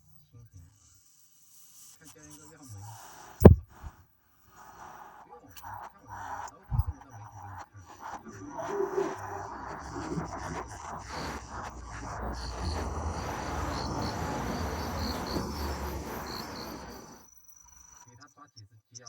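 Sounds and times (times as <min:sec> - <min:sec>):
noisy background: 0:08.0 - 0:17.2
high-pitched insect buzz: 0:08.4 - 0:17.2
insects chirping: 0:08.4 - 0:18.0.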